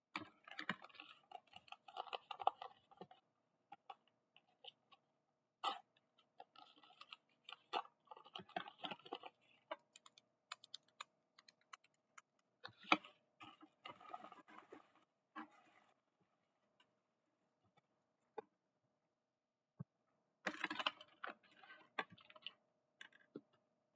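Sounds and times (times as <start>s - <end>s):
small plastic items clicking: 5.6s - 13.1s.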